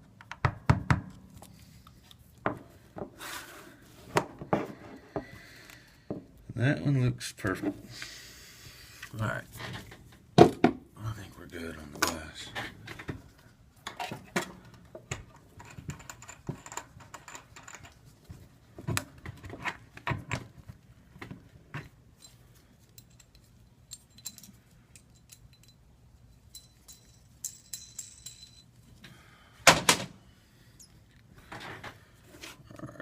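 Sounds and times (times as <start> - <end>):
small parts and tools clicking: 13.8 - 18.0, 22.2 - 28.8.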